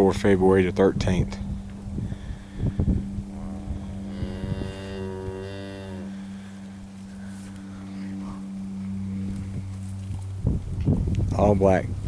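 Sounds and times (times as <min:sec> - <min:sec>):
steady low hum: 0:00.0 - 0:12.0
cow mooing: 0:03.2 - 0:06.8.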